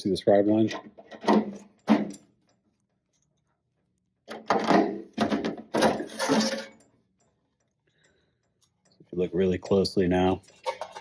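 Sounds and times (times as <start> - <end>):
sheet metal scraping and knocking: 4.3 - 6.8.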